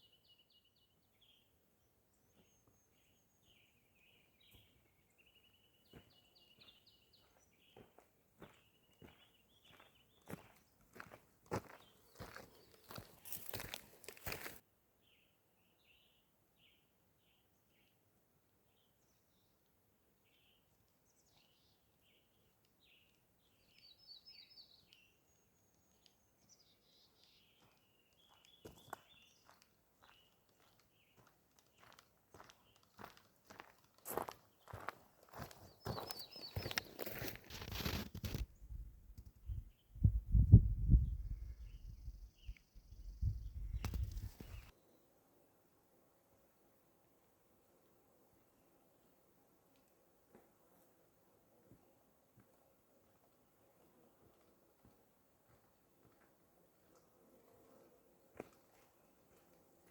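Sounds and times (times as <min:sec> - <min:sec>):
songbird singing: 0:00.0 - 0:18.0, 0:18.6 - 0:45.0
faint birdsong chirps and warbles: 0:00.0 - 0:45.4.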